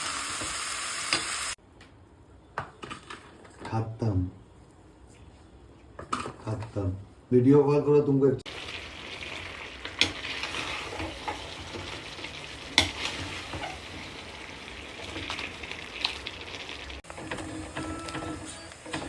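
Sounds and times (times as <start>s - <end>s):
food sizzling in a frying pan: 0.0s - 1.6s, 8.5s - 19.0s.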